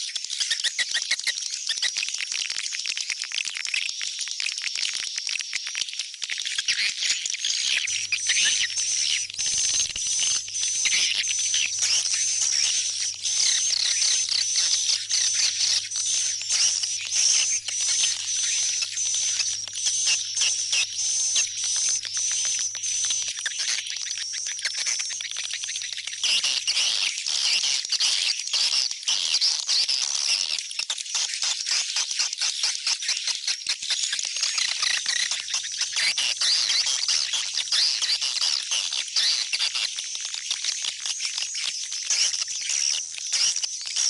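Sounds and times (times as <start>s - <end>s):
birds twittering chirps: 7.4s - 27.6s, 34.6s - 44.0s
steady high-pitched tone: 7.9s - 23.3s.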